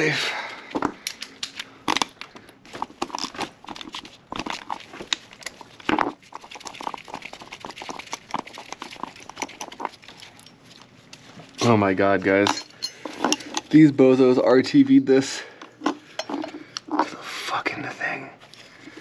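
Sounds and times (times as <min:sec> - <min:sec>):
hand tools clicking and tapping: 0:07.5 - 0:11.2.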